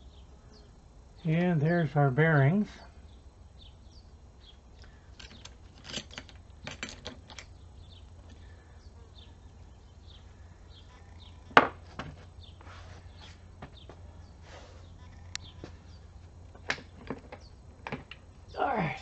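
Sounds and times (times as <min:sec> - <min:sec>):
metal parts clinking: 0:04.8 - 0:07.5.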